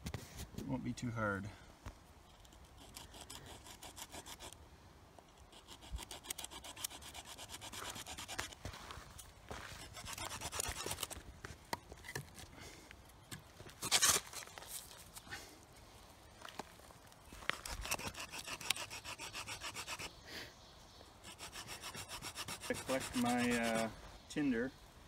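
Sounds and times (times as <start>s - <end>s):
stone rasping on wood: 2.6s - 4.6s, 5.5s - 8.6s, 9.7s - 11.2s, 17.6s - 20.1s, 21.2s - 23.9s.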